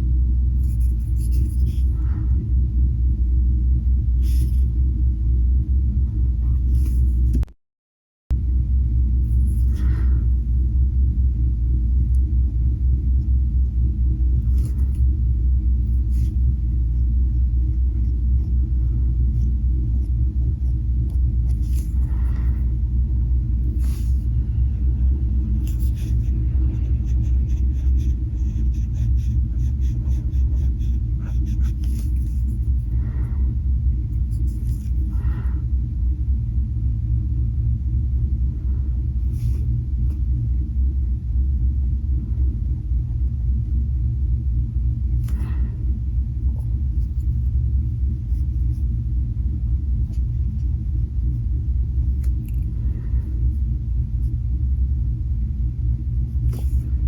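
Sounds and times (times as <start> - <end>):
steady low rumble: 0.0 - 7.5, 8.3 - 57.0
marker scratching on paper: 0.6 - 2.1, 15.9 - 16.4, 21.1 - 22.6, 23.6 - 24.4, 25.4 - 33.2, 34.2 - 35.5, 39.3 - 40.2, 56.3 - 57.0.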